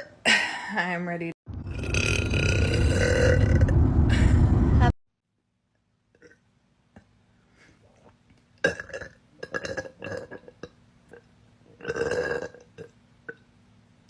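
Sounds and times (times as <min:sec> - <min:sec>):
woman belching: 0:01.7 - 0:03.7, 0:08.6 - 0:10.7, 0:11.8 - 0:12.9.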